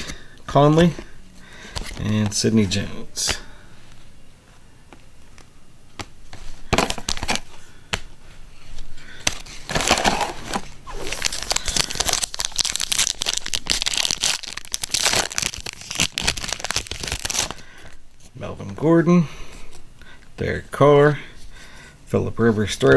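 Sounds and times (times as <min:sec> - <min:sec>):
foil wrapper crinkling and tearing: 0:09.4 - 0:17.6.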